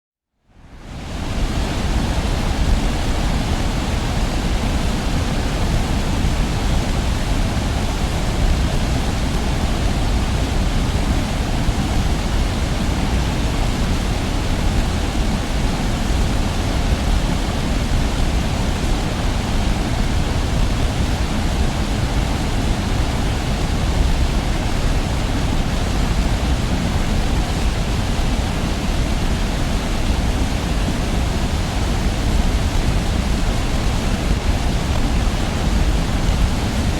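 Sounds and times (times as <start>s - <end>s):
distant waterfall rushing: 0.6s - 36.9s.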